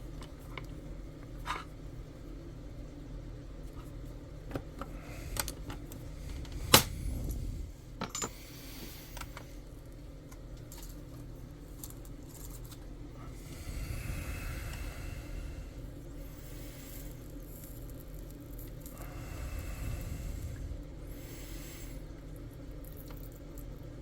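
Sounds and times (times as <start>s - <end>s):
low steady hum: 0.0s - 24.0s
metal parts clicking and clinking: 8.0s - 8.4s.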